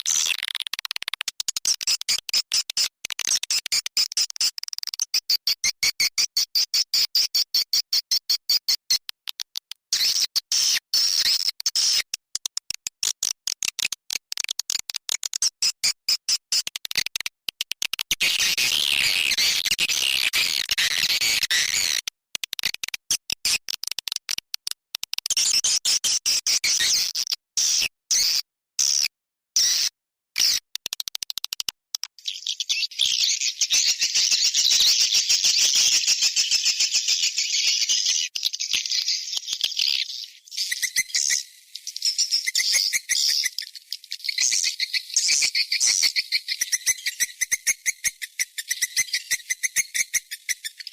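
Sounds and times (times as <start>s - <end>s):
swiftlet chirps and twittering: 32.2s - 50.9s.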